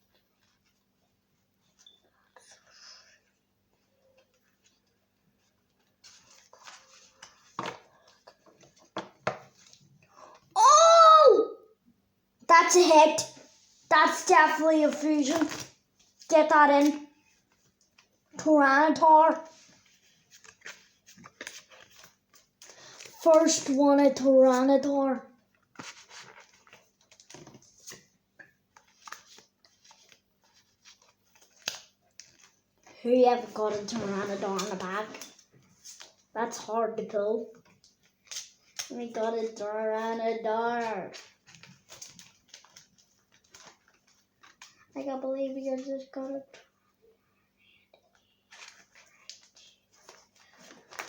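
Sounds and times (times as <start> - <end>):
trading cards rustling and snapping: 6.0 - 9.8, 14.1 - 17.0, 25.6 - 32.6, 33.4 - 36.2, 37.6 - 39.3, 40.8 - 44.8, 48.5 - 51.0
trading cards being shuffled: 33.4 - 36.1.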